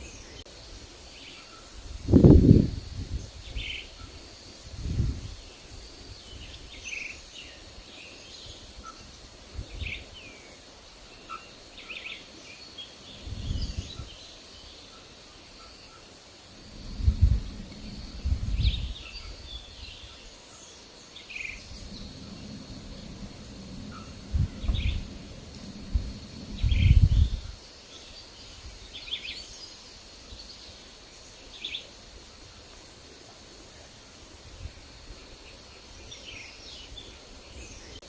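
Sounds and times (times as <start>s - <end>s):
birds chirping: 1.2s - 31.9s
wind gusts on microphone: 1.8s - 10.3s, 13.0s - 14.3s, 16.4s - 20.4s, 21.2s - 27.7s, 34.4s - 38.0s.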